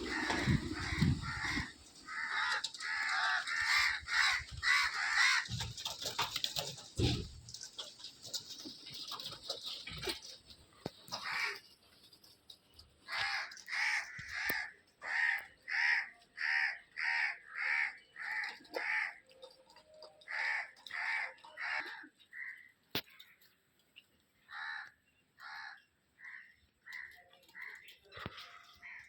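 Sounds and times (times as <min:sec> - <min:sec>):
bird calling: 0:00.0 - 0:05.6.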